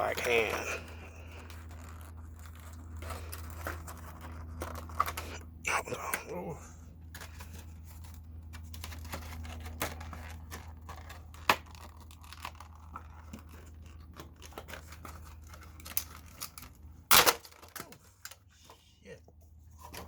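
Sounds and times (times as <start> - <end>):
plastic packaging crinkling: 0.0 - 5.4, 7.1 - 18.5
plastic cracking: 7.1 - 18.5.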